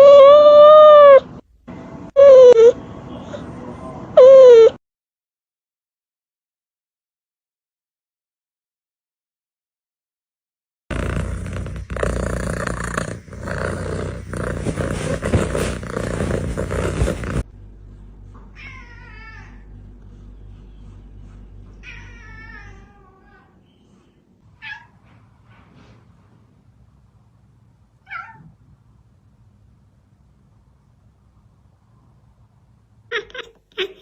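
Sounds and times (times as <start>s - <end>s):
loud rough noise: 10.9s - 17.8s
cat meowing: 18.6s - 19.6s, 21.8s - 23.6s, 24.6s - 25.0s, 28.0s - 28.5s, 33.1s - 34.0s.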